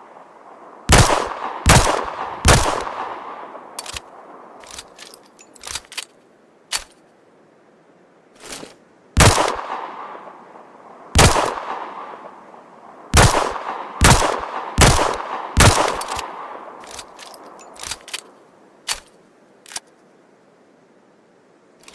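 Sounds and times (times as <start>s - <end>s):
faint clicks: 3.8s - 7.1s, 15.9s - 20.1s.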